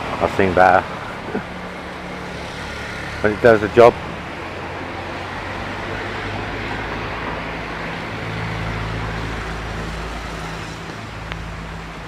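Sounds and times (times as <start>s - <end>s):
traffic noise: 0.0s - 12.0s
vehicle engine humming: 0.0s - 12.0s.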